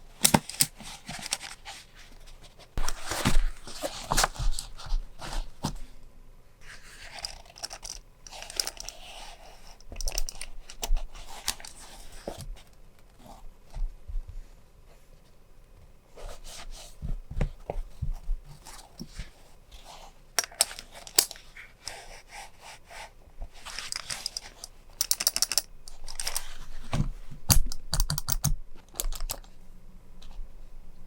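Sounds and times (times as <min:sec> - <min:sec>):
hands handling stationery: 0:00.2 - 0:05.8, 0:23.5 - 0:29.5.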